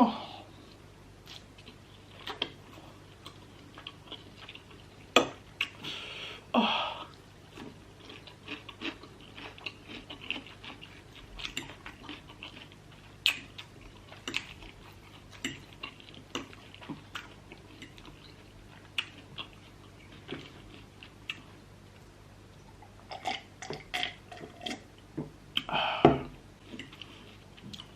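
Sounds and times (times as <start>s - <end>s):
chewing food: 0.7s - 5.8s, 7.1s - 22.1s, 26.6s - 27.9s.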